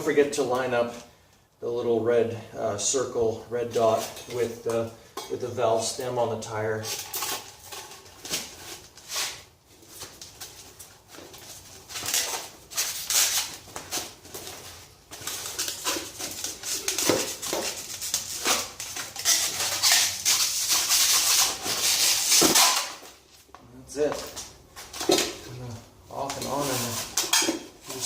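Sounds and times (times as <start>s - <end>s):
rubber scraping against rim: 26.2s - 28.0s.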